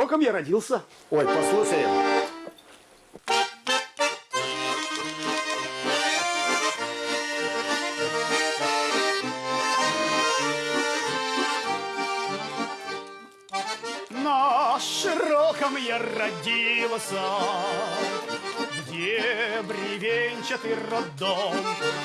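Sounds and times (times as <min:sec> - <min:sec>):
accordion folk melody: 0:01.2 - 0:02.5, 0:03.2 - 0:22.0
person singing: 0:14.1 - 0:22.0.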